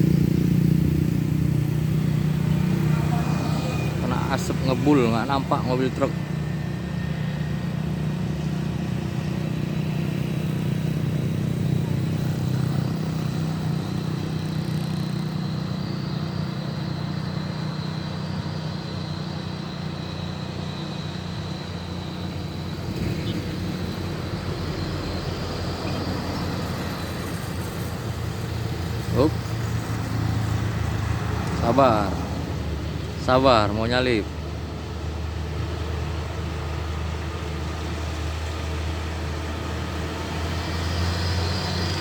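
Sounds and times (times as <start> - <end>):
road noise: 0.0 - 42.0
vehicle engine under load: 0.0 - 42.0.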